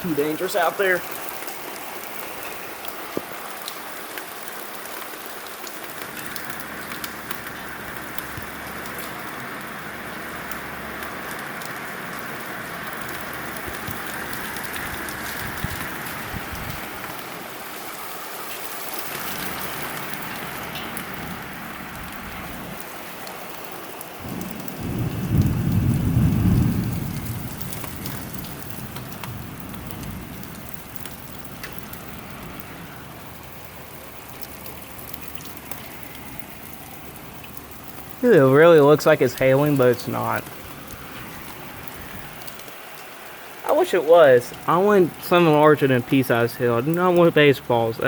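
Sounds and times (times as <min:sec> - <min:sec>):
heavy rain pouring: 0:00.0 - 0:48.0
thunder rumbling: 0:06.0 - 0:17.6, 0:24.2 - 0:42.7.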